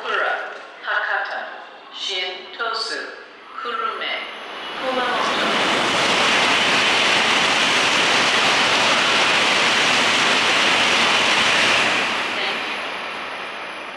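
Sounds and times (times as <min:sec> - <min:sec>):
train rushing past: 0:03.3 - 0:13.9.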